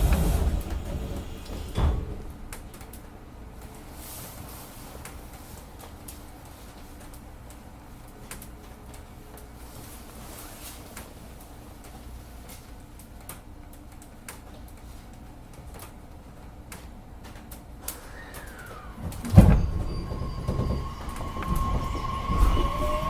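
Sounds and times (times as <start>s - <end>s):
loud low clunk and rush: 0.0s - 2.6s, 18.9s - 23.0s
train motor electric whine: 0.0s - 2.6s, 17.8s - 23.0s.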